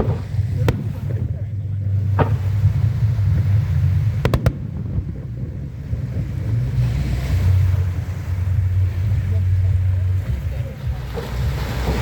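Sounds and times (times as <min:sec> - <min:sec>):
fireworks bangs: 0:00.0 - 0:06.9
low rumble: 0:00.0 - 0:12.0.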